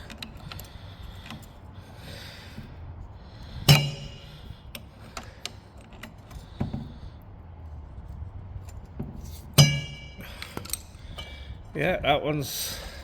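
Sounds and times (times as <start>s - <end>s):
ringing metallic clink: 3.7s - 4.5s, 9.6s - 10.8s.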